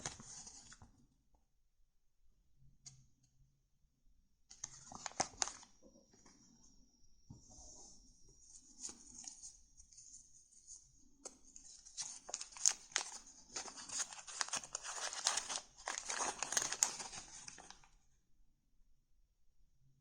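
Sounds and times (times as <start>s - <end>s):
paper crinkling and rustling: 0.0s - 0.8s, 4.5s - 5.7s, 11.2s - 17.9s.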